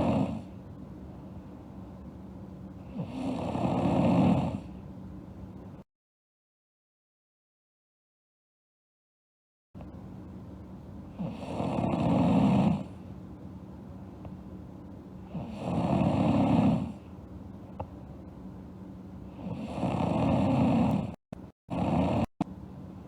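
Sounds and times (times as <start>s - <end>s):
girl snoring: 0.0s - 0.5s, 2.8s - 4.8s, 11.2s - 13.0s, 15.3s - 17.0s, 19.3s - 22.3s.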